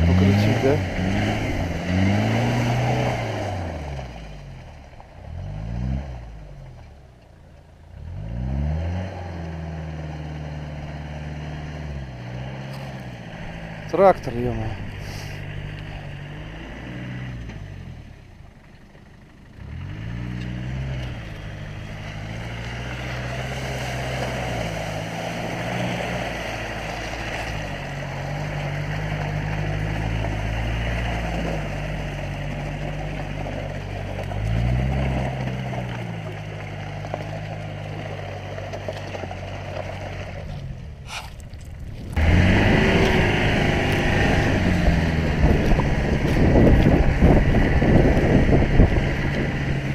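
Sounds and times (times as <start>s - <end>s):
diesel engine under load: 0.0s - 49.9s
tyres churning in mud: 0.0s - 49.9s
wind on microphone: 41.0s - 49.9s.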